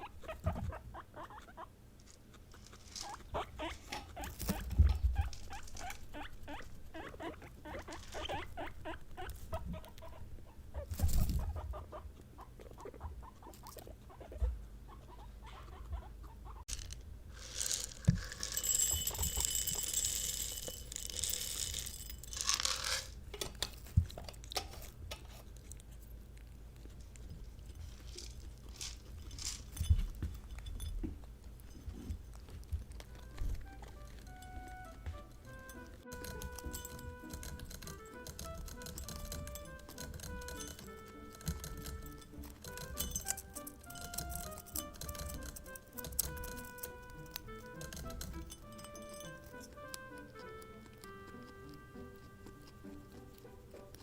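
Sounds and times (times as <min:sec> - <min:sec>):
guinea pigs pulsing calls: 0:00.0 - 0:16.7, 0:32.7 - 0:54.0.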